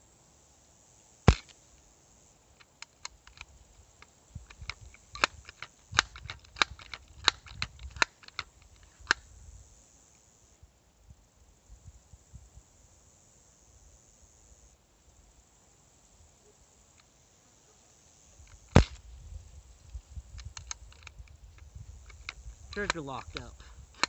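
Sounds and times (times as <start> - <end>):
air gun shot: 1.3 - 1.5, 18.7 - 19.0, 22.7 - 24.0
small mechanical clicks: 2.6 - 9.2, 20.3 - 24.0.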